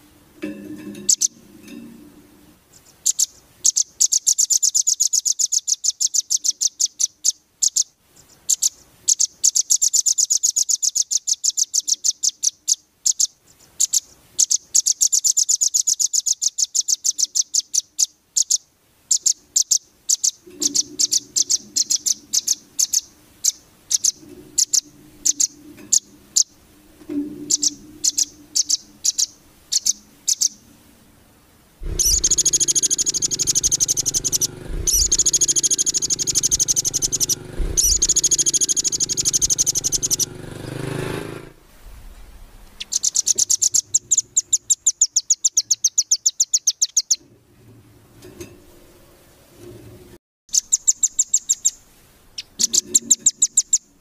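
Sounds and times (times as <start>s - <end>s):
songbird trilling chip notes: 1.0s - 1.4s, 3.0s - 7.9s, 8.5s - 26.6s, 27.3s - 30.7s, 31.8s - 40.9s, 42.8s - 47.2s, 50.5s - 51.8s, 52.4s - 53.9s
low steady hum: 20.5s - 43.2s.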